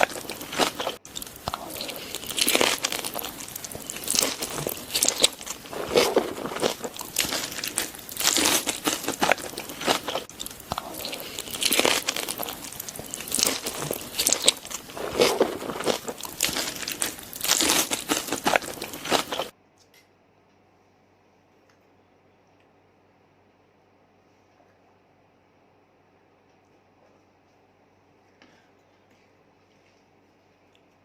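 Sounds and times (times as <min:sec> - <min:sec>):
person chewing and crunching food: 0:00.0 - 0:19.6.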